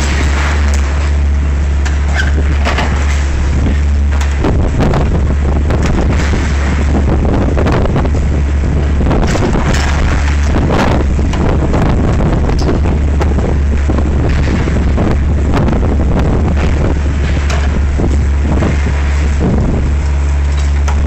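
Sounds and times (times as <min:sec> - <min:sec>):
excavator diesel engine under load: 0:00.0 - 0:21.0.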